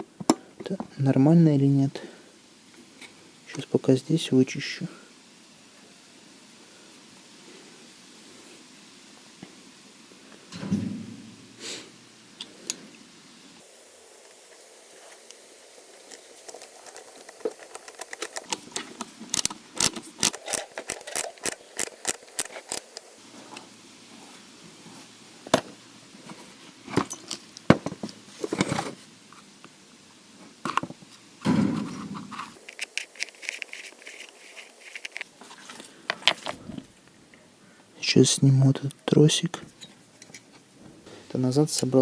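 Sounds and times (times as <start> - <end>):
brush scrubbing metal parts: 13.6 - 18.5, 20.2 - 23.2, 32.6 - 35.3
parts scraping and knocking: 13.6 - 18.5, 20.2 - 23.2, 32.6 - 35.3.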